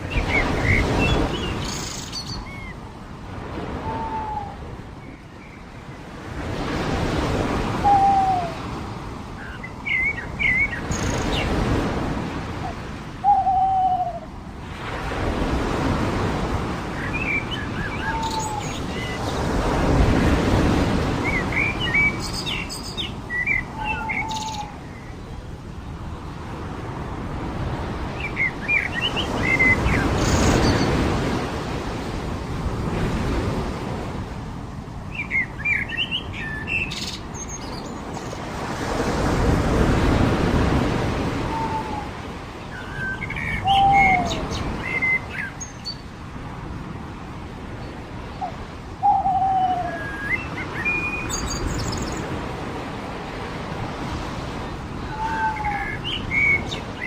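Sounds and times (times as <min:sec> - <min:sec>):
birds chirping: 0:00.0 - 0:02.9, 0:09.4 - 0:11.7, 0:17.0 - 0:19.6, 0:21.2 - 0:25.3, 0:41.4 - 0:46.1, 0:47.8 - 0:52.4, 0:55.0 - 0:57.0
surf washing onto beach: 0:14.3 - 0:22.6, 0:38.3 - 0:45.4.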